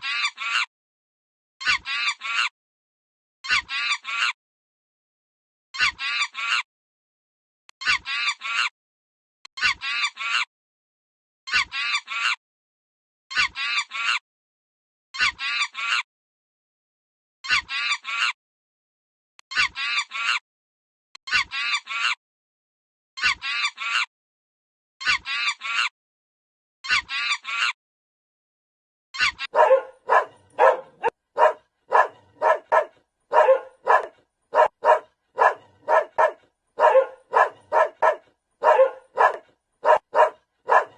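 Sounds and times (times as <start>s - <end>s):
dog barking rapidly: 29.4s - 40.9s
honking bird call: 29.5s - 34.0s.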